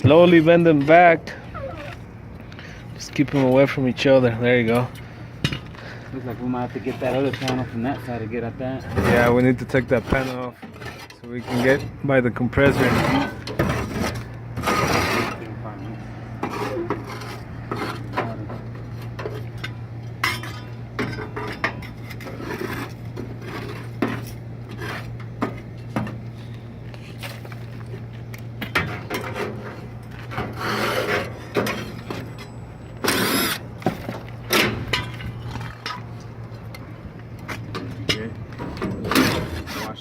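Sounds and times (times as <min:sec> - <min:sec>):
sheet metal clanking and scraping: 0:08.8 - 0:12.0, 0:12.6 - 0:26.2, 0:28.6 - 0:33.3, 0:37.6 - 0:40.0.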